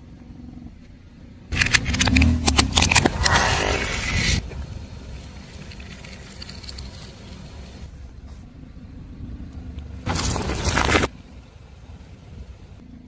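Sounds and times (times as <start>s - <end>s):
car engine rumble: 0.0s - 13.0s
objects crunching under tyre: 1.5s - 8.4s, 9.8s - 11.2s.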